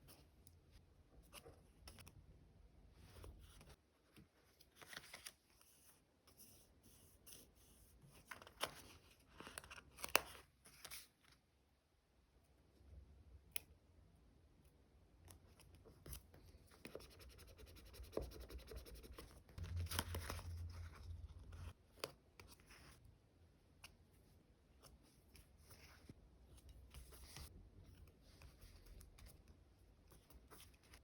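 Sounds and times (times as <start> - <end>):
paper scratching: 16.8 - 21.7.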